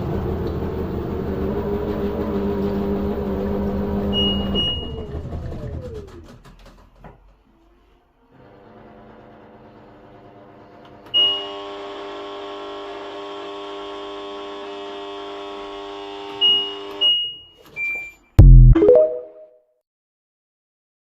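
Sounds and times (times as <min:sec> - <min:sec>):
washing machine humming: 0:00.0 - 0:06.1
washing machine beeps: 0:04.1 - 0:05.1, 0:11.2 - 0:11.5, 0:16.4 - 0:19.4.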